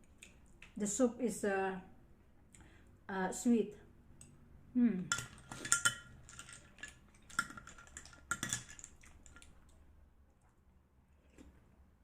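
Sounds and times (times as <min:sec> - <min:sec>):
spoon and clam shells clinking: 0:05.1 - 0:09.5.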